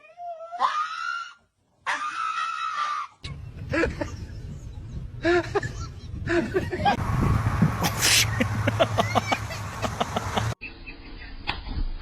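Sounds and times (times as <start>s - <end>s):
high-pitched wailing cries: 0.0s - 3.2s.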